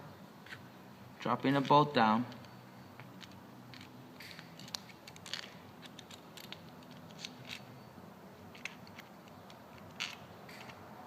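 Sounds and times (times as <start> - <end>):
small metal parts clicking: 2.3 - 7.7, 8.5 - 10.8.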